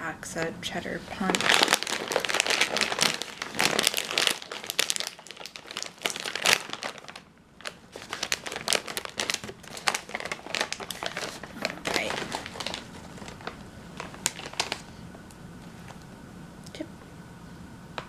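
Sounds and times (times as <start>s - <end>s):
crisp packet crinkling: 1.2s - 14.9s.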